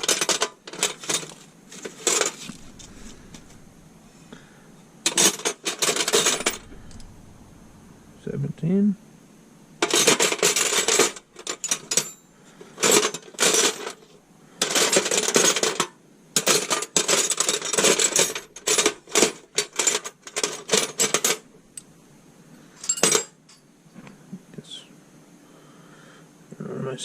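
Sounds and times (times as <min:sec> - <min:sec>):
metal sockets clinking and rattling: 0:00.0 - 0:03.5, 0:05.1 - 0:07.0, 0:09.8 - 0:12.2, 0:12.8 - 0:21.9, 0:22.8 - 0:23.6.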